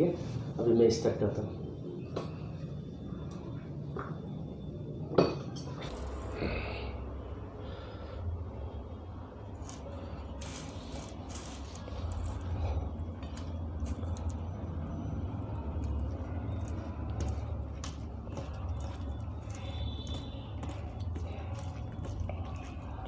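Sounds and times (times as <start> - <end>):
steady low hum: 0.0 - 23.0
chewing and eating sounds: 9.5 - 23.0.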